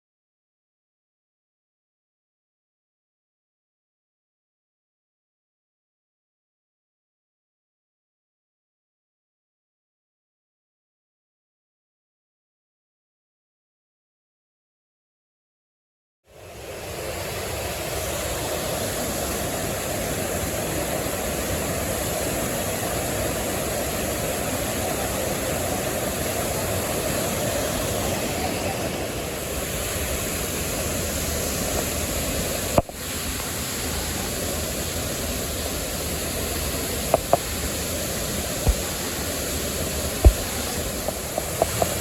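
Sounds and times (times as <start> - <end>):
waterfall pouring: 16.6 - 42.0.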